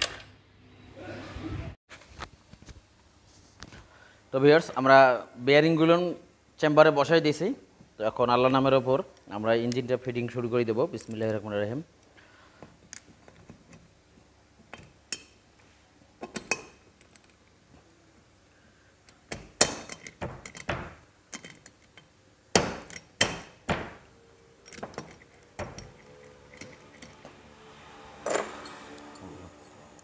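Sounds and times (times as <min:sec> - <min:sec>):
metal tools clinking on engine parts: 0:24.6 - 0:27.3.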